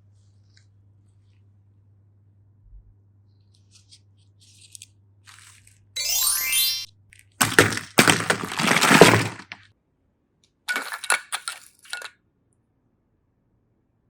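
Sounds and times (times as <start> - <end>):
chocolate shell cracking: 7.4 - 9.6.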